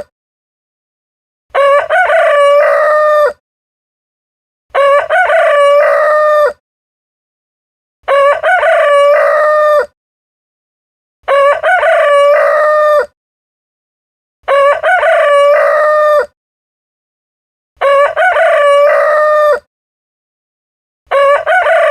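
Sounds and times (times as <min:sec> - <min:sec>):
rooster crowing: 0:01.5 - 0:03.4, 0:04.7 - 0:06.6, 0:08.1 - 0:09.9, 0:11.3 - 0:13.1, 0:14.5 - 0:16.4, 0:17.8 - 0:19.7, 0:21.1 - 0:21.9.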